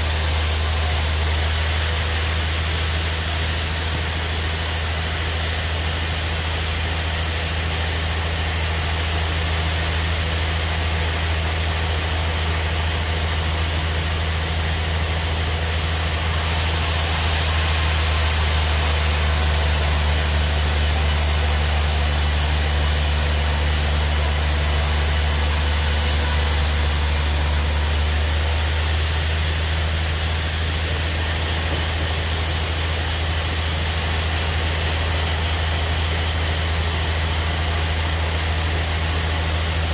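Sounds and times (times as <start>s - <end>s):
saw blade cutting log: 0.0s - 2.0s, 15.6s - 35.8s
sawmill motor hum: 0.0s - 39.9s.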